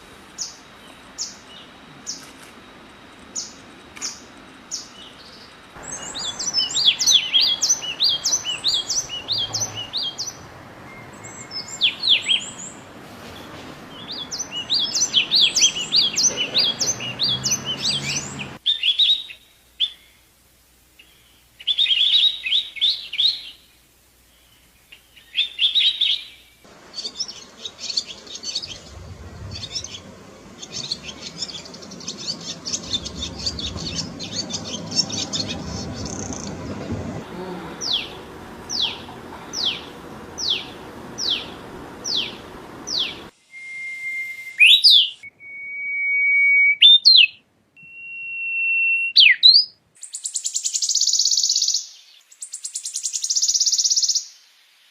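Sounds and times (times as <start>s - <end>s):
songbirds chirping: 0.0s - 45.4s, 46.6s - 54.9s
background hiss: 0.0s - 49.1s, 49.7s - 54.9s
short descending whistles: 42.9s - 49.6s.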